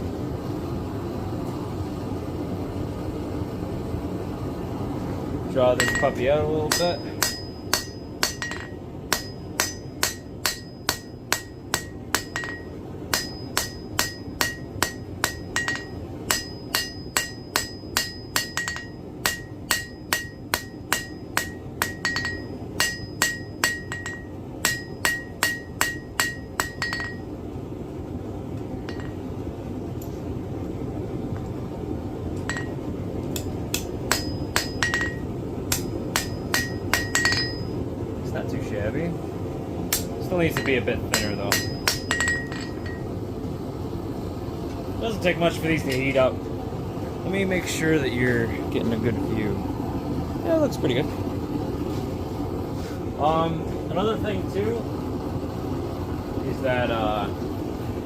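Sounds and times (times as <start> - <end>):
hammer ringing on anvil: 5.8 - 27.3, 28.9 - 29.2, 32.5 - 32.8, 33.4 - 37.8, 39.9 - 43.1.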